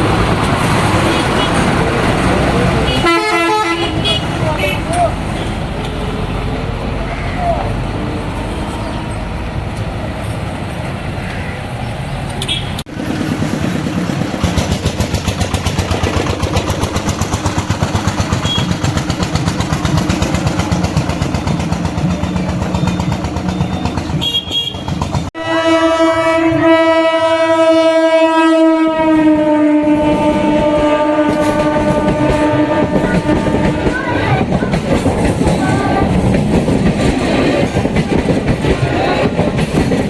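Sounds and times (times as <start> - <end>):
train clattering past: 0.0 - 40.0
train horn blast: 2.8 - 4.8, 24.2 - 34.2.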